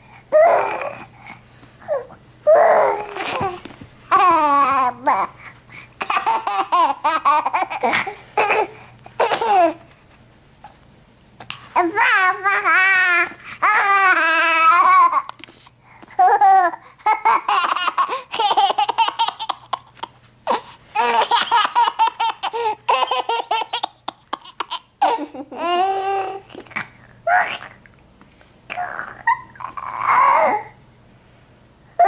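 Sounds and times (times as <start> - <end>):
baby babbling: 0.3 - 1.1, 1.8 - 5.4, 11.8 - 15.3, 25.0 - 27.8, 28.7 - 30.8
baby laughing: 2.5 - 5.3, 6.0 - 9.8, 16.1 - 27.7, 28.7 - 30.7.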